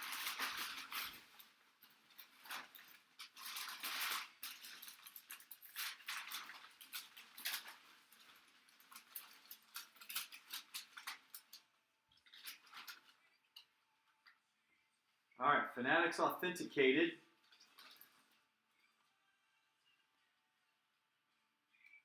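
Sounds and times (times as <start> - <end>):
packaging crinkling: 0.0 - 13.7, 17.3 - 18.4.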